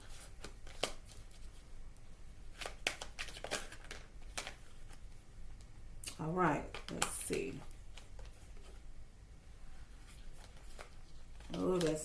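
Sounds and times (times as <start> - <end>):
cards being shuffled: 0.0 - 1.6, 2.5 - 5.2, 6.6 - 8.8, 9.8 - 12.0.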